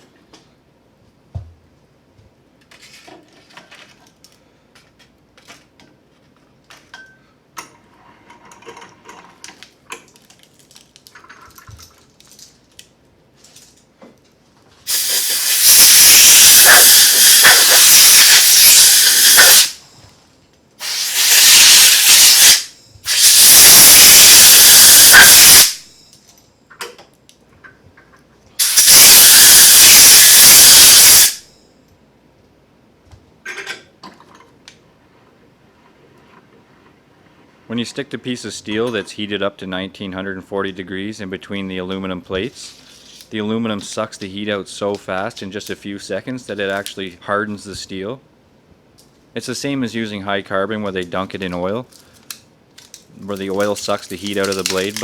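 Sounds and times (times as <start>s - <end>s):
loud steady hissing: 14.9s - 20.1s, 20.8s - 26.0s, 28.6s - 31.5s, 53.2s - 55.0s.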